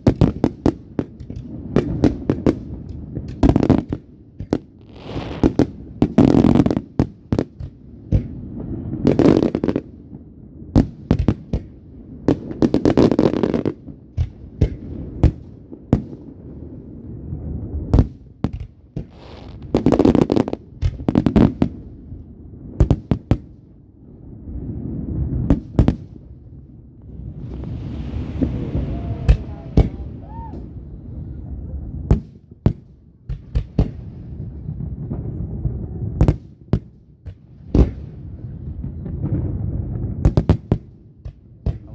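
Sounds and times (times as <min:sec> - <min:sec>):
fireworks crackling: 0:00.0 - 0:10.1, 0:10.8 - 0:41.9
fireworks bangs and cracks: 0:00.0 - 0:41.9
firework hiss and whistle: 0:04.9 - 0:05.6, 0:19.1 - 0:20.2, 0:27.4 - 0:31.3
low rumble: 0:27.2 - 0:32.2.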